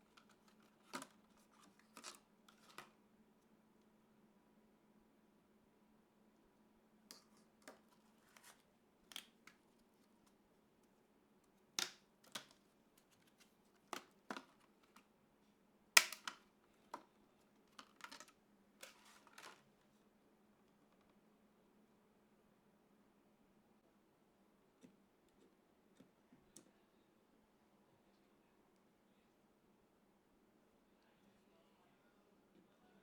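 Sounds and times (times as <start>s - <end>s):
plastic clicks and rustles: 0.0s - 3.0s, 11.8s - 15.1s, 16.0s - 19.7s.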